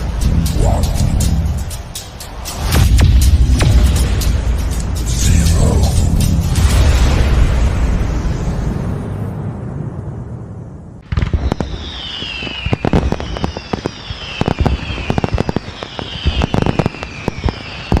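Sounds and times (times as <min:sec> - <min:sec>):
fireworks rumble: 0:00.0 - 0:18.0
fireworks crackling bangs: 0:06.4 - 0:09.0, 0:11.0 - 0:18.0
falling whistles: 0:11.3 - 0:18.0.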